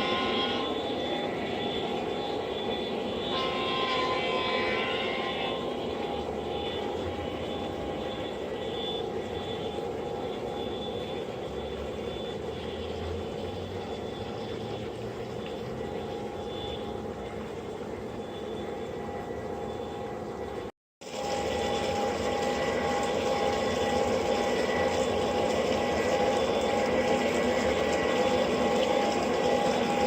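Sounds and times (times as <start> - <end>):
model train whirring on rails: 0.0 - 30.0.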